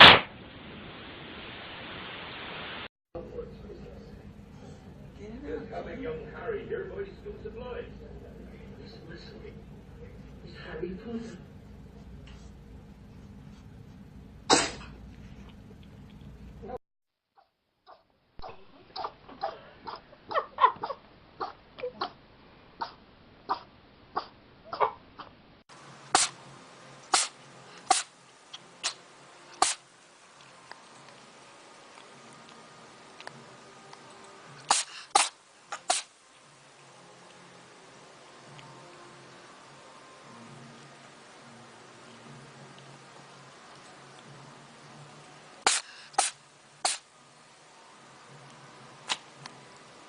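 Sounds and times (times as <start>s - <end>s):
cats sneezing: 14.5s - 15.0s, 26.2s - 26.4s, 27.1s - 28.1s, 28.8s - 29.0s, 29.6s - 29.8s, 34.6s - 36.1s, 45.7s - 47.0s.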